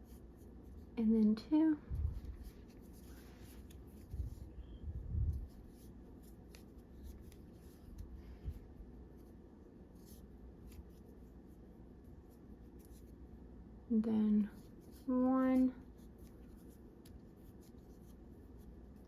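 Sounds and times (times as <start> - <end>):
soft low bumps: 1.8 - 2.5.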